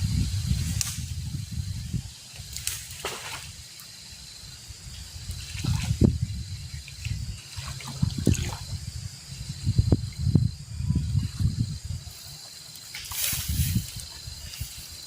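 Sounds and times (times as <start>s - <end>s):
water trickling and splashing: 0.4s - 4.0s, 4.8s - 15.0s.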